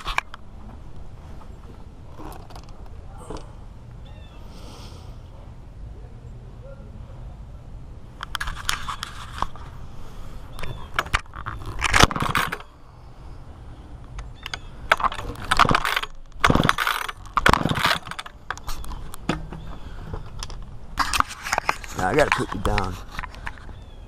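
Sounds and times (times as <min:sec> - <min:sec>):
camera handling noise: 0:08.2 - 0:09.7, 0:10.5 - 0:12.7.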